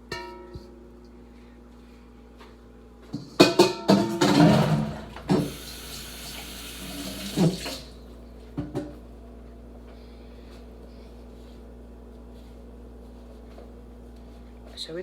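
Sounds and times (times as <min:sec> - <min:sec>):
tap running into a sink: 0:05.2 - 0:07.9.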